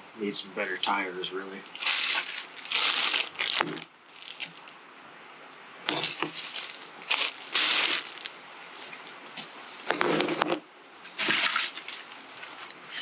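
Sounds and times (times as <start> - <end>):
plastic packaging crinkling: 1.6 - 4.7, 5.9 - 9.2, 11.2 - 12.6.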